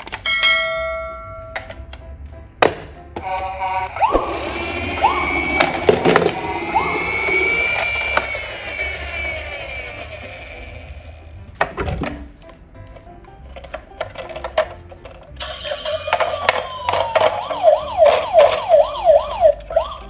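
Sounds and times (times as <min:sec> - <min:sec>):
toy electronic sirens: 0:03.2 - 0:11.3, 0:15.4 - 0:20.0
whirring rattle: 0:04.0 - 0:11.5.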